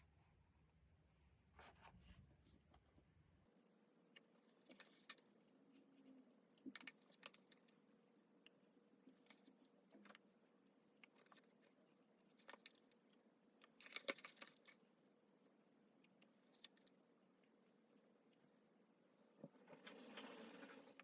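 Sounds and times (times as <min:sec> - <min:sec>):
paper crinkling: 0:04.4 - 0:05.3, 0:06.7 - 0:07.8, 0:11.1 - 0:13.0, 0:13.6 - 0:14.8.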